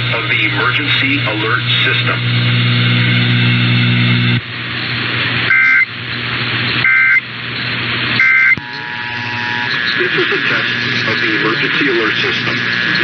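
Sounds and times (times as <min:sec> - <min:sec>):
radio static hiss: 0:00.0 - 0:04.4, 0:08.1 - 0:13.0
steady hum with static: 0:00.0 - 0:13.0
buzzy two-tone data bursts: 0:05.5 - 0:05.9, 0:06.8 - 0:07.2, 0:08.2 - 0:13.0.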